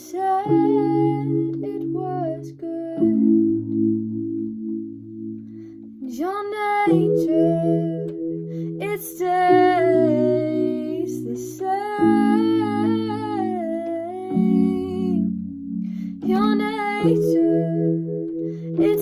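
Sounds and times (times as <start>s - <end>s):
woman singing with vibrato: 0.0s - 3.3s, 6.0s - 8.1s, 8.8s - 15.3s, 16.2s - 18.1s, 18.8s - 19.0s
instrumental chords: 0.0s - 19.0s.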